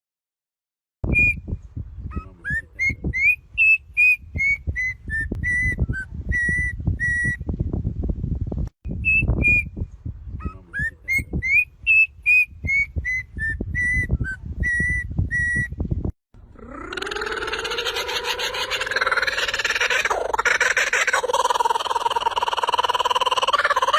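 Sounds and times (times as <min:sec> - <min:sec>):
bird whistling: 0:01.1 - 0:01.5, 0:02.1 - 0:07.4, 0:09.0 - 0:09.7, 0:10.4 - 0:15.8.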